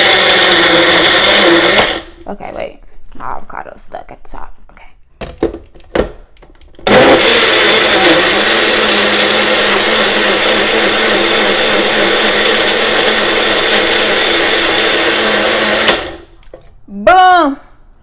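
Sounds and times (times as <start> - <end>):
blender motor running: 0.0 - 2.2, 6.8 - 16.4.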